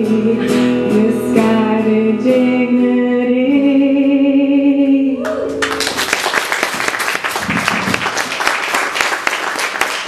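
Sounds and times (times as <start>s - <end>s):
guitar: 0.0s - 6.2s
audience applause: 5.6s - 10.0s.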